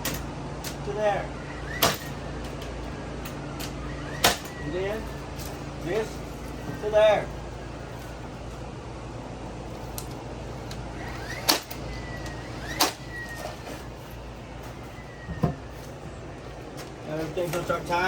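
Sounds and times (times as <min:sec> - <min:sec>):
steady low hum: 0:00.0 - 0:18.0
nail gun shots: 0:01.7 - 0:02.2, 0:04.2 - 0:04.6, 0:11.3 - 0:11.8, 0:12.7 - 0:13.0.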